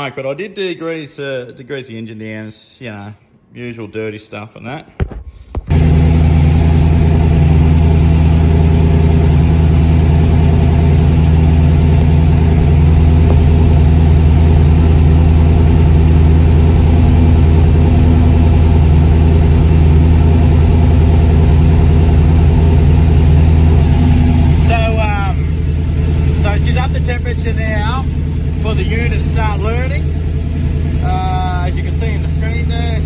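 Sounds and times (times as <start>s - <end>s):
engine idling: 5.7s - 33.0s.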